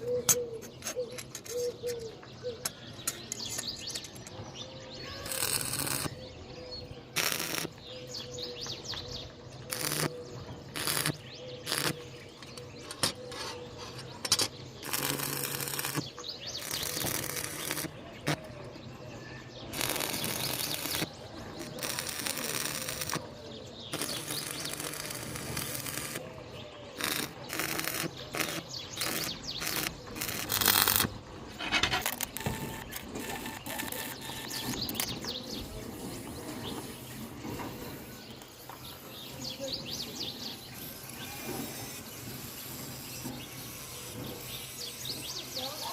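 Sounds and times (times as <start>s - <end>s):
birds chirping: 0.0s - 45.9s
harsh metalwork noise bursts: 5.1s - 6.2s, 7.2s - 7.8s, 9.7s - 12.0s, 14.3s - 18.4s, 19.7s - 23.2s, 23.9s - 26.2s, 27.0s - 45.9s.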